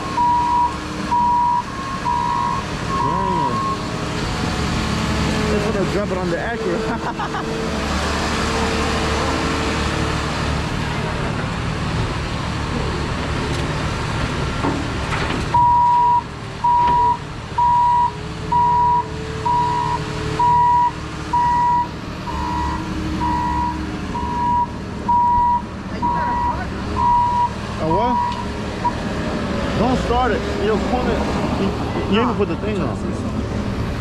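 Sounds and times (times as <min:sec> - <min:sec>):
vehicle backup alarm beeping: 0:00.0 - 0:03.9, 0:15.5 - 0:29.0
vehicle noise rushing: 0:00.0 - 0:34.0.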